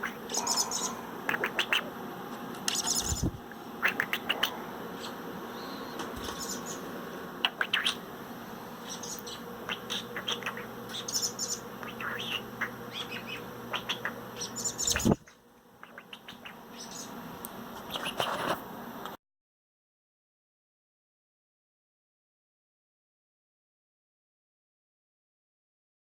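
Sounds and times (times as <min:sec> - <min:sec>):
robin chirping: 0:00.0 - 0:01.9, 0:02.7 - 0:08.0, 0:08.8 - 0:17.2
steady background hum: 0:00.0 - 0:19.2.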